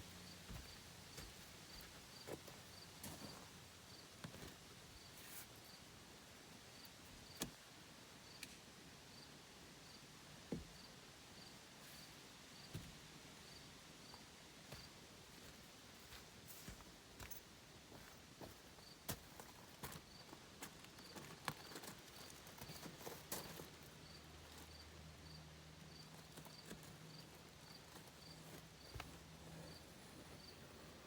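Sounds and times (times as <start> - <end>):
faint insect chirping: 0.1 - 8.4, 9.1 - 12.8, 13.4 - 31.0.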